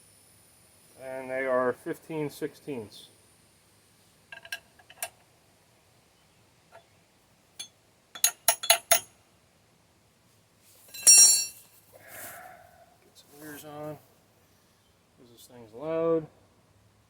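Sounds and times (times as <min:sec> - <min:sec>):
metal tool parts clinking: 0:08.2 - 0:09.1, 0:10.9 - 0:11.6
ringing metallic clatter: 0:10.9 - 0:11.6.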